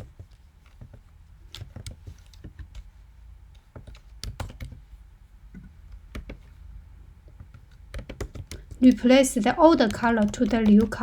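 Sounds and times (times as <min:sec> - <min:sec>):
typing on computer keyboard: 0:03.6 - 0:04.9, 0:05.6 - 0:11.0.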